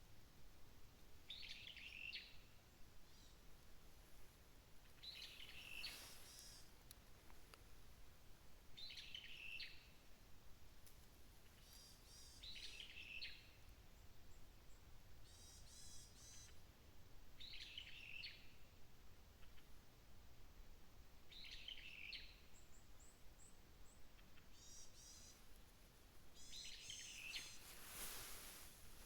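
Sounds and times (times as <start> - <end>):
bird warbling faintly: 5.0 - 6.8, 26.3 - 29.0.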